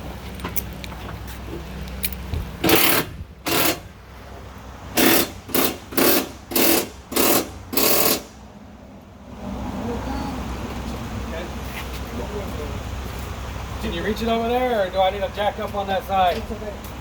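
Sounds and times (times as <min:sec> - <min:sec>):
pneumatic impact wrench bursts: 0:02.6 - 0:03.9, 0:05.0 - 0:08.4.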